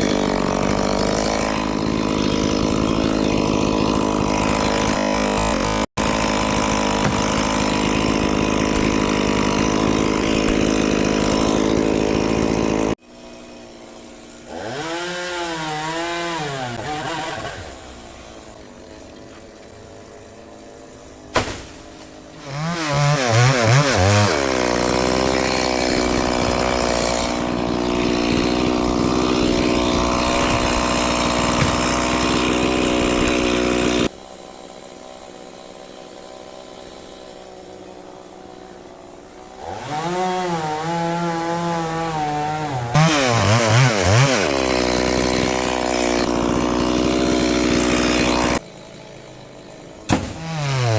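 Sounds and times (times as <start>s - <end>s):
chainsaw revving: 0.0s - 19.0s, 22.0s - 50.9s.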